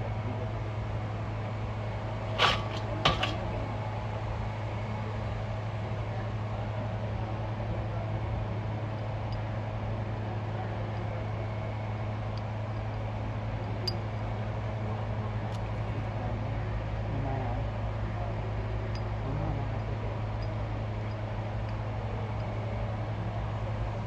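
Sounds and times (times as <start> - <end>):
low mechanical hum: 0.0 - 24.0.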